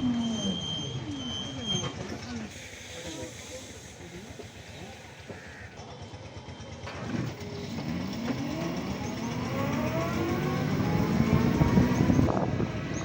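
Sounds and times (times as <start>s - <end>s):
vehicle engine accelerating: 7.0s - 13.0s.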